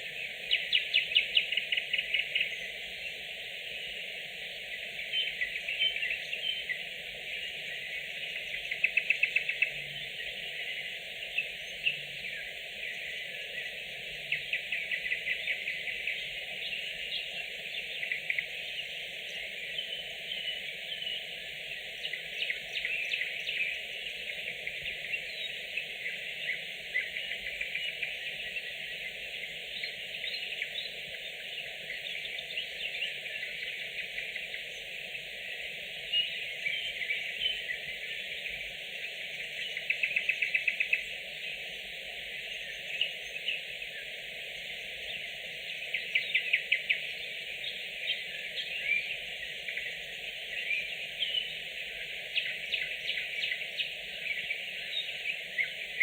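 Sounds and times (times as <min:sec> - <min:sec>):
low background hiss: 0:00.0 - 0:56.0
nightingales singing: 0:00.0 - 0:56.0.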